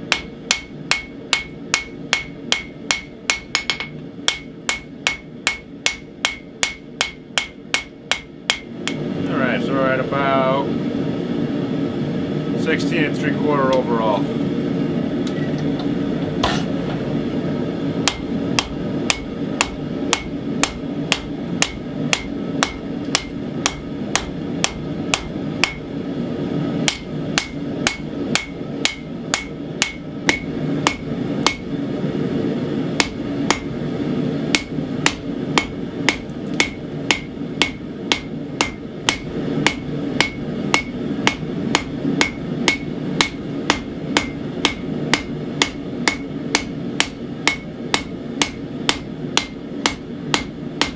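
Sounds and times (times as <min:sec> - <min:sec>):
hammer striking steel on anvil: 0:00.0 - 0:09.0, 0:18.0 - 0:25.8, 0:26.9 - 0:31.7, 0:33.0 - 0:33.7, 0:34.5 - 0:50.9
steady low hum: 0:00.0 - 0:50.9.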